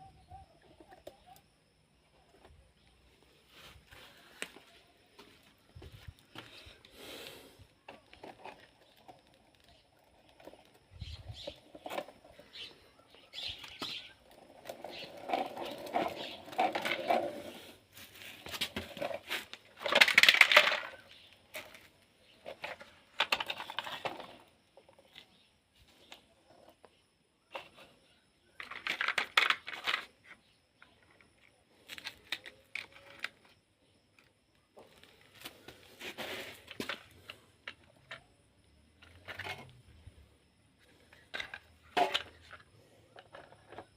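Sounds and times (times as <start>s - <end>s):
plastic toys clicking and rattling: 18.8s - 21.8s, 22.4s - 25.0s, 28.6s - 30.3s, 31.8s - 33.6s, 41.1s - 43.9s.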